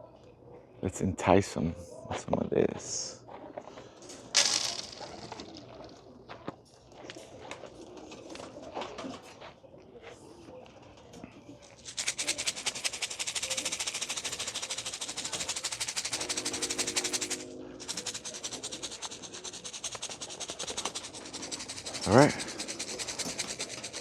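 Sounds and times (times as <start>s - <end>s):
feed rattling in a container: 4.2s - 5.9s, 11.7s - 24.0s.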